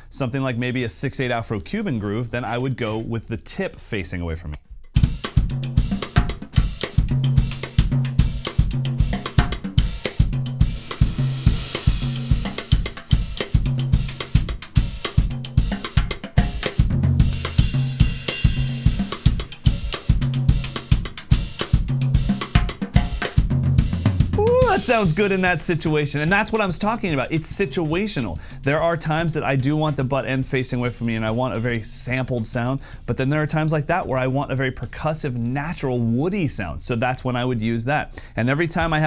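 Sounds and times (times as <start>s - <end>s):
drum kit groove: 4.6s - 35.6s
bass drum: 4.7s - 28.3s
cymbals: 6.6s - 15.8s, 17.2s - 23.3s.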